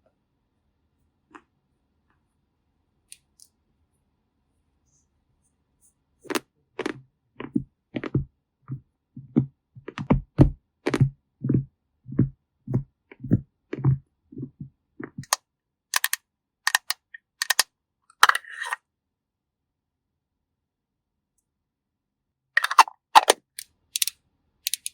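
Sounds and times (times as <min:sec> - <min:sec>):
sharp bright clicks: 0:24.0 - 0:24.9.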